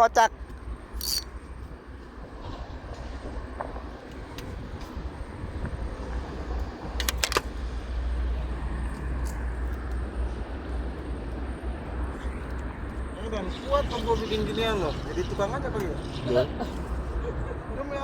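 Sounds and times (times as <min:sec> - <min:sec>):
road traffic rumble: 0:00.0 - 0:18.0
sharp clicks: 0:07.0 - 0:07.5.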